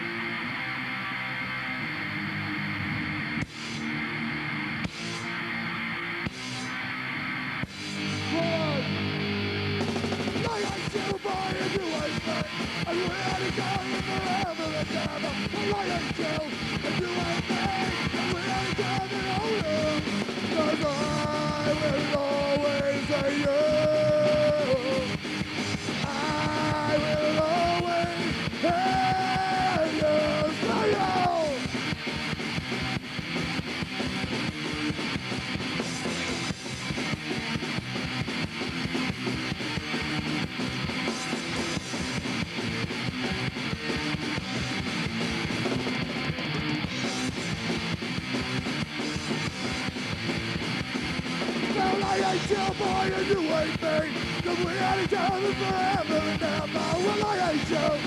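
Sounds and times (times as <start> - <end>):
punk rock band playing: 0.0 - 58.0
sung and shouted vocals: 10.7 - 25.1, 26.0 - 31.6, 51.7 - 58.0.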